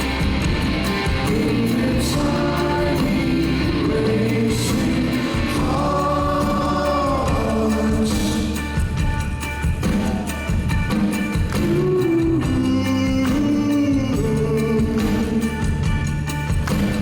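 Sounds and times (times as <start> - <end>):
backing voices: 0.0 - 15.8
live rock band: 0.0 - 17.0
person singing: 1.1 - 9.0, 11.6 - 15.9.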